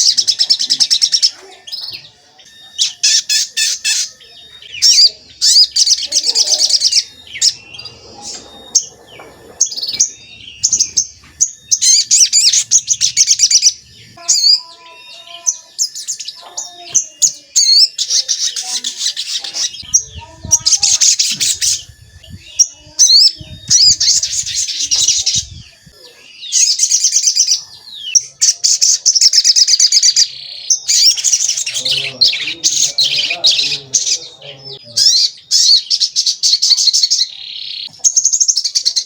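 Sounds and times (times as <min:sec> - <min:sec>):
songbird chirping: 0:00.0 - 0:39.0.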